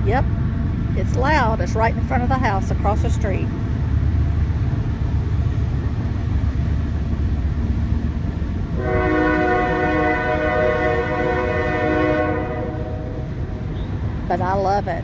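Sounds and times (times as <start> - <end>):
train rumbling past: 0.0 - 15.0
train horn chord: 8.8 - 14.0.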